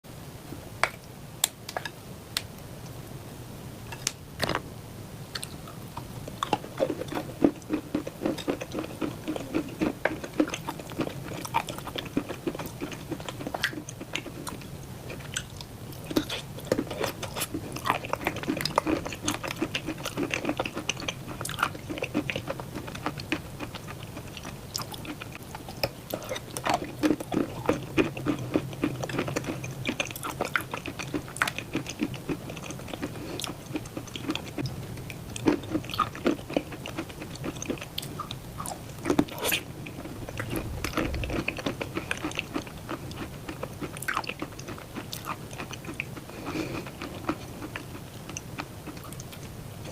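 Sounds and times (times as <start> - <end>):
wet chewing and mouth smacks: 5.4 - 49.9.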